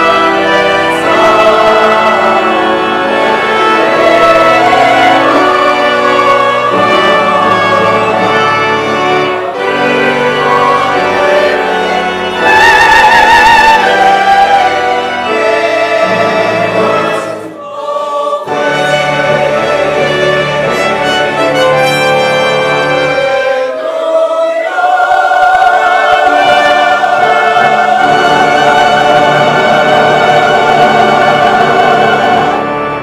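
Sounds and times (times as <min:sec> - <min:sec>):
choir singing a hymn: 0:00.0 - 0:33.0.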